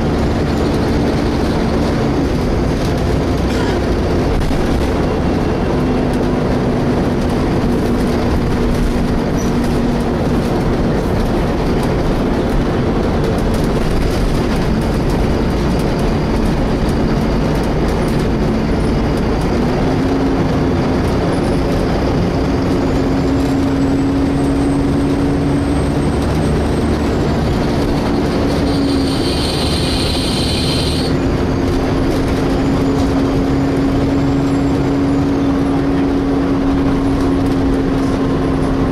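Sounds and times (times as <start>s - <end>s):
bus engine rumbling with whine: 0.0s - 38.9s
brief high squeal: 28.6s - 31.1s.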